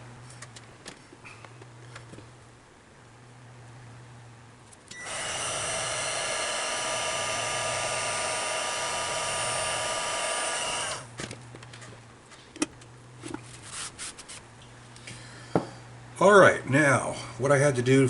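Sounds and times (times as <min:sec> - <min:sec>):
heat gun blowing: 0:05.0 - 0:11.1.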